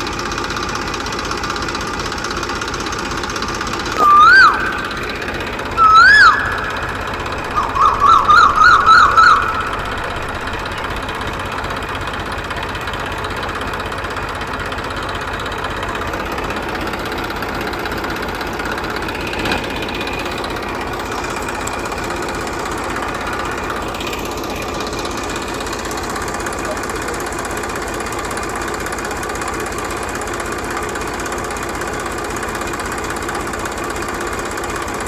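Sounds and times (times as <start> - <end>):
small engine chugging: 0.0 - 35.0
siren-like warbling tone: 4.0 - 11.6.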